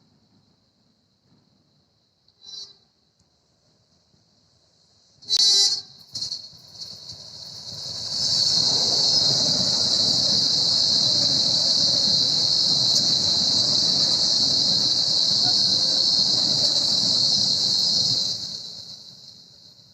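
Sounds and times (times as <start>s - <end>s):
train horn toot: 5.2s - 6.0s
train running noise: 5.2s - 19.9s.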